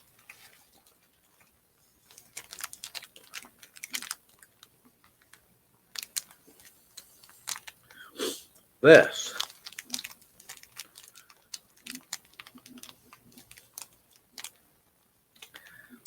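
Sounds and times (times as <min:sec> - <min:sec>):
person chewing crunchy crackers: 0:02.1 - 0:04.7, 0:09.0 - 0:14.6.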